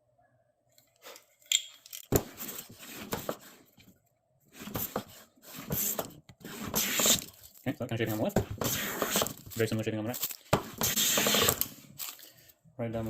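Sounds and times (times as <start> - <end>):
hand plane shaving wood: 4.6 - 7.2, 8.6 - 9.3, 10.7 - 11.6.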